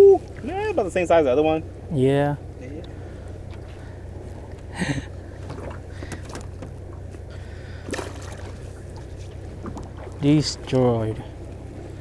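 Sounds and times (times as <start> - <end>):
steady low hum: 0.0 - 12.0
short sharp knocks or splashes: 7.9 - 8.6.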